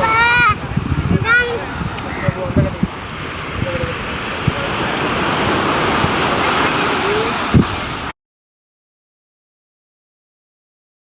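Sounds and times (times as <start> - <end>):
surf breaking on a beach: 0.0 - 8.1
wind buffeting microphone: 0.0 - 8.1.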